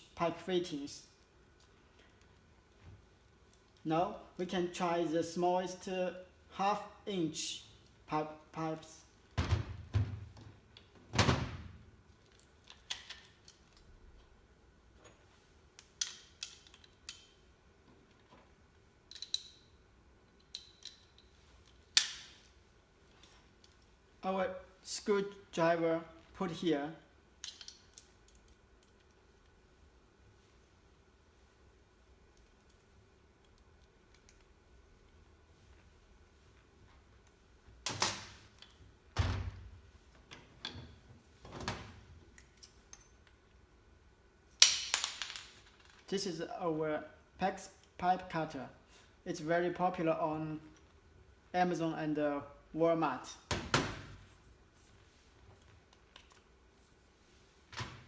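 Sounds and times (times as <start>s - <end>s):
tool parts clicking and clacking: 19.1s - 19.6s.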